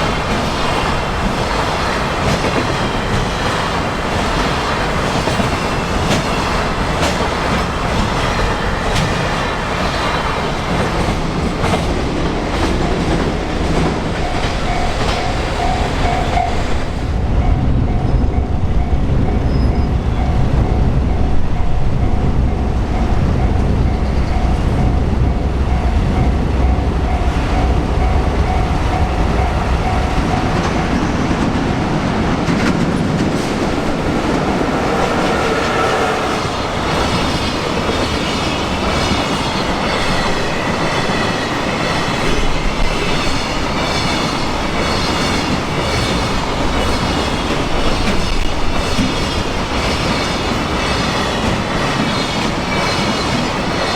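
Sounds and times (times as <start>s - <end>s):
train wheels clacking over rail joints: 0.0s - 17.0s
train wheel squeal: 14.1s - 17.1s, 19.3s - 21.2s, 29.8s - 31.5s, 34.8s - 53.9s.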